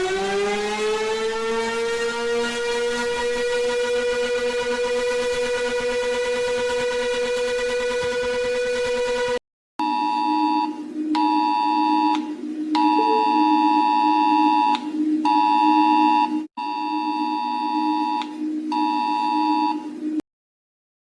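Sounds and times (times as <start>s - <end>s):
low alarm drone: 0.0s - 20.2s
two-note alarm beep: 9.8s - 19.8s.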